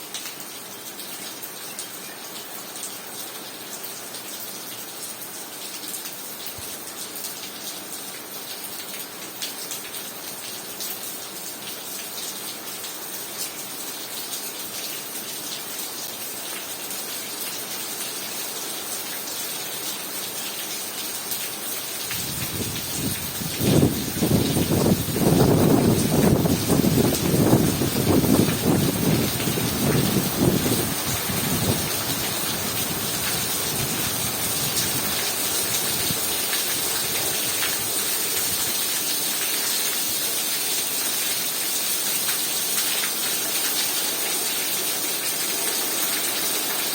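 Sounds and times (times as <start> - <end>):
heavy rain falling: 16.3 - 46.9
wind buffeting microphone: 22.1 - 36.3.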